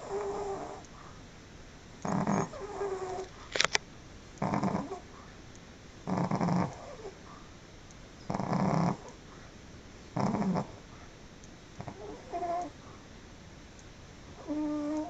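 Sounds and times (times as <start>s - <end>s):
dog snoring: 0.0s - 0.8s, 2.0s - 3.3s, 4.4s - 5.1s, 6.0s - 7.2s, 8.3s - 9.1s, 10.2s - 10.8s, 11.8s - 12.7s, 14.4s - 15.0s
sharp clicks: 2.0s - 4.8s.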